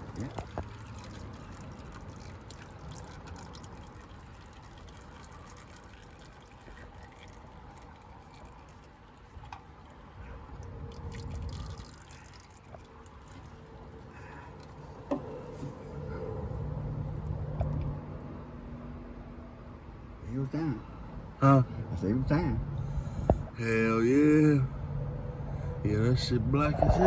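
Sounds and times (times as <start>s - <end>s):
oil dripping into drain pan: 0.0s - 15.7s.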